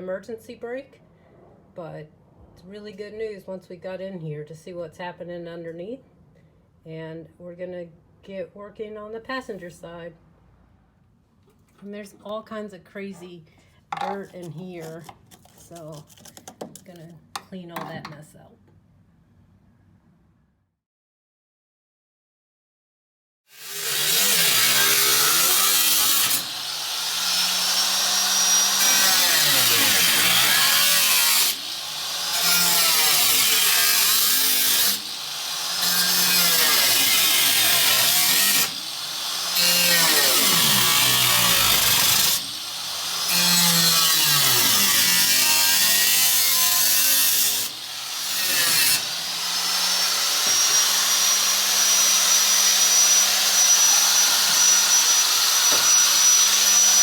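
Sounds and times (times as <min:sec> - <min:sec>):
power tool cutting sheet metal: 0:23.5 - 0:57.0.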